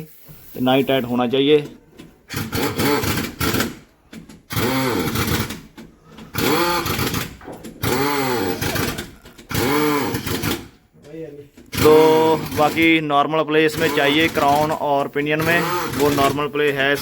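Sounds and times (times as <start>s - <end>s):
gears whirring when spun by hand: 2.3s - 3.7s, 6.3s - 10.6s, 13.7s - 17.0s.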